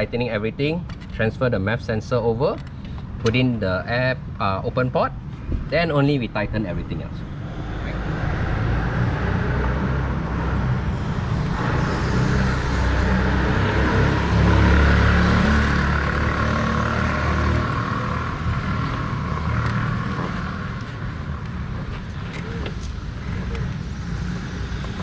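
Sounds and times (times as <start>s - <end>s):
vehicle passing by: 6.6s - 25.0s.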